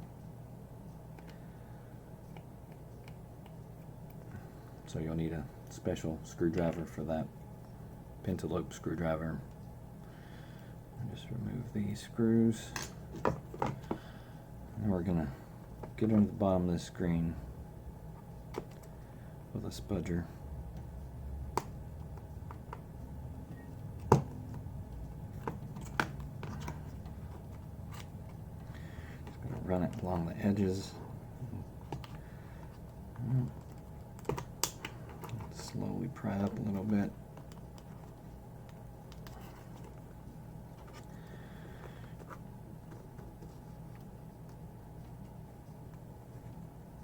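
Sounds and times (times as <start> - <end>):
faint low hum: 0.0 - 47.0
small clicks and taps: 32.8 - 35.8.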